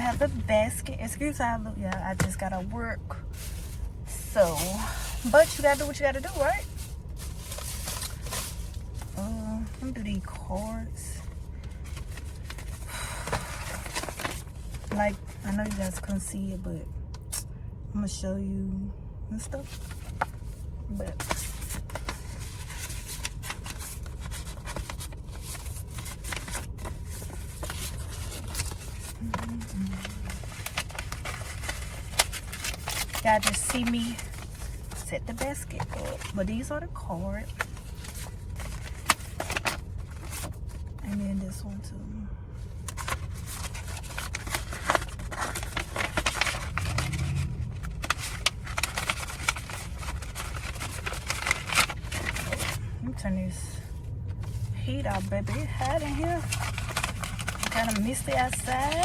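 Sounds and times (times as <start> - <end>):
car cabin hum: 0.0 - 11.4, 51.2 - 57.1, 57.7 - 59.0
rustling and crinkling of items: 0.0 - 17.4, 19.4 - 41.7, 42.5 - 59.0
steady low rumble: 0.0 - 59.0.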